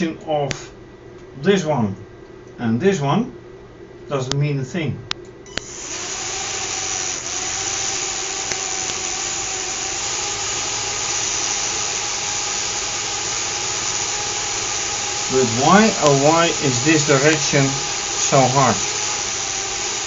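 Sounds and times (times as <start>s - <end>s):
small electric motor whirring: 5.5s - 20.0s.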